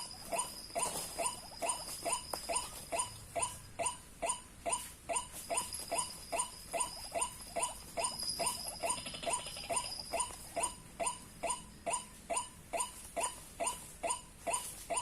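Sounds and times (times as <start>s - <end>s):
thin steady high tone: 0.0s - 15.0s
bird croaking call: 8.0s - 10.7s.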